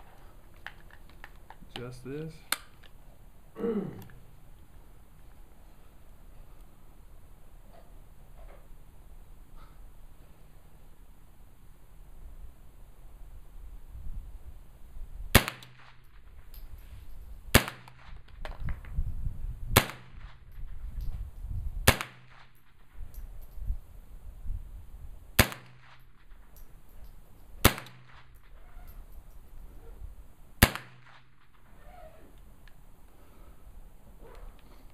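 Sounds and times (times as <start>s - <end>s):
rifle gunshots: 15.4s - 16.0s, 17.5s - 18.2s, 19.8s - 20.4s, 21.9s - 22.6s, 25.4s - 26.0s, 27.6s - 28.3s, 30.6s - 31.6s.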